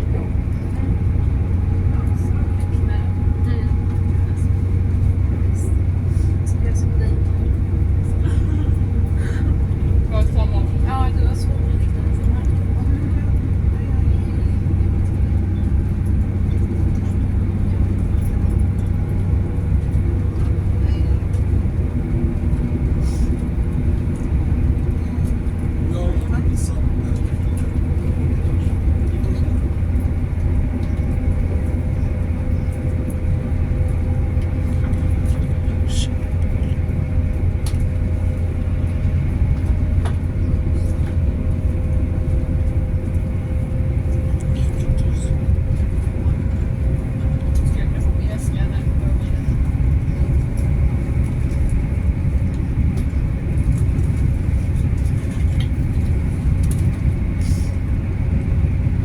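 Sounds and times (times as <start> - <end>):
train rumbling: 0.0 - 59.0
light ticks and rattles: 14.4 - 57.6.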